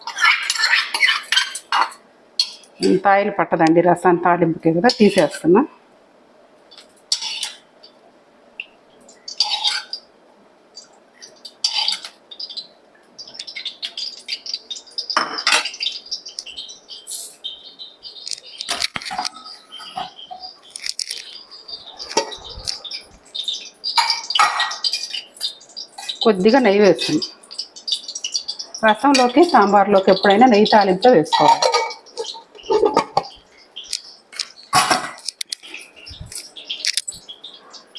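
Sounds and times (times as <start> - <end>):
spoon clinking on steel pots: 0.0 - 3.0, 4.9 - 5.5, 6.7 - 7.6, 9.3 - 10.0, 11.4 - 12.2, 15.1 - 16.0, 23.6 - 27.3, 28.0 - 35.8
utensils scraping: 0.0 - 3.0, 6.8 - 7.6, 9.3 - 10.0.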